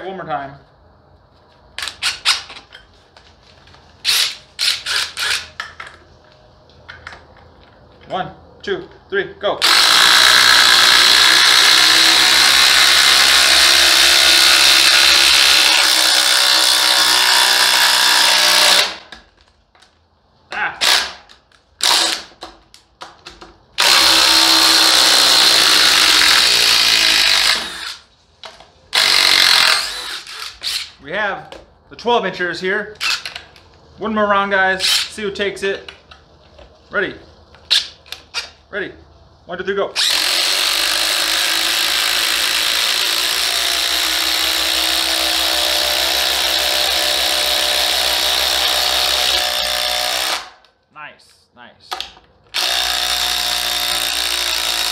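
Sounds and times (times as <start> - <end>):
impact driver hammering screw: 4.1 - 5.8, 9.6 - 19.2, 20.8 - 21.2, 21.8 - 22.5, 23.8 - 28.0, 29.0 - 30.9, 40.0 - 50.6, 52.5 - 54.9.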